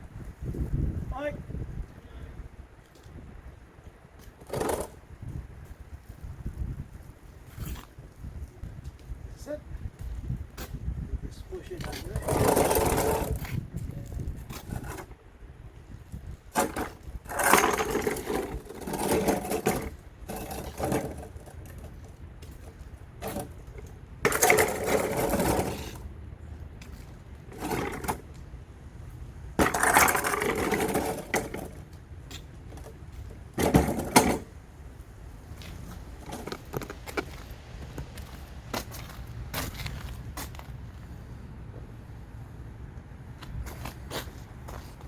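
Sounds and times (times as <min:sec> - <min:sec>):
shovel parts scraping and rattling: 0:11.8 - 0:13.4, 0:16.5 - 0:26.1, 0:26.9 - 0:28.3, 0:29.6 - 0:31.9, 0:33.6 - 0:34.5, 0:35.7 - 0:37.4.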